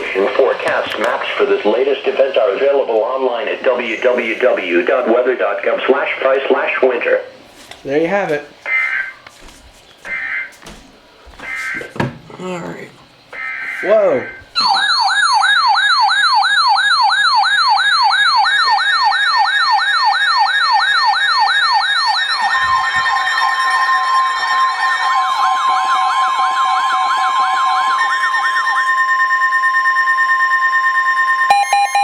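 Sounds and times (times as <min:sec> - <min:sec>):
electronic yelp siren: 0:08.7 - 0:09.4, 0:10.1 - 0:10.6, 0:11.4 - 0:12.0, 0:13.3 - 0:32.0
steady tone: 0:23.6 - 0:32.0.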